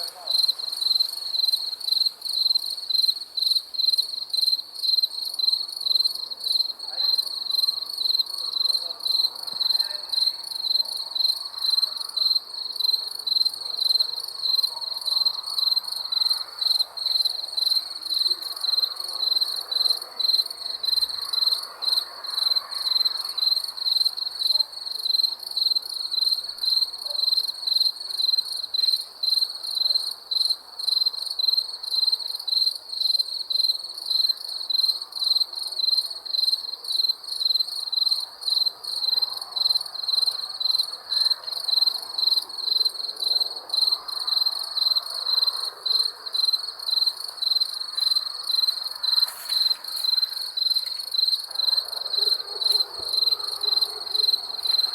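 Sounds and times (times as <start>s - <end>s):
cricket chirping: 0.0s - 54.9s.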